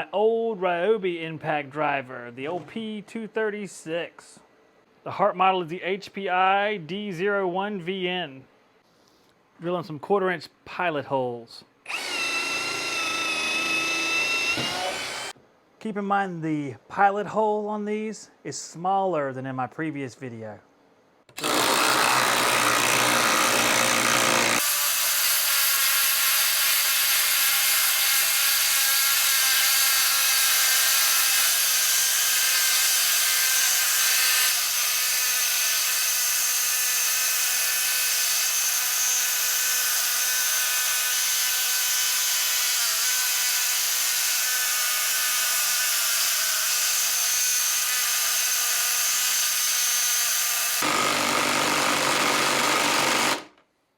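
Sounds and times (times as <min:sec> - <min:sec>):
impact driver hammering into wood: 0:11.9 - 0:15.3, 0:50.8 - 0:53.6.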